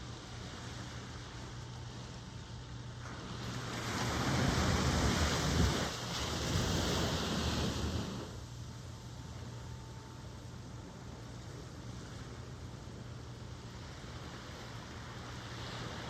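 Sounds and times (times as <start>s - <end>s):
low rumble of surf: 0.0s - 16.0s
ocean wave breaking: 3.1s - 8.4s.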